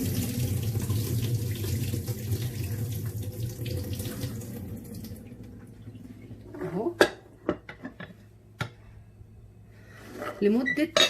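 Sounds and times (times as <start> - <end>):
water pouring into a sink: 0.0 - 5.9.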